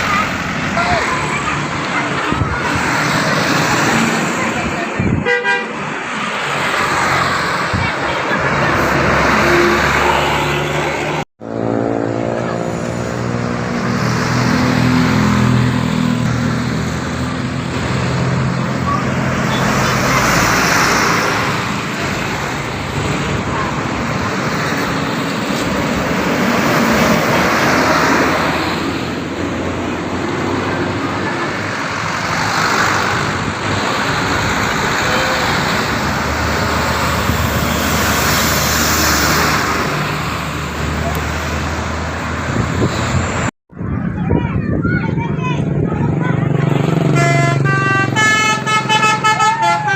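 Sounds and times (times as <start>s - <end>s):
highway traffic passing: 0.0s - 49.9s.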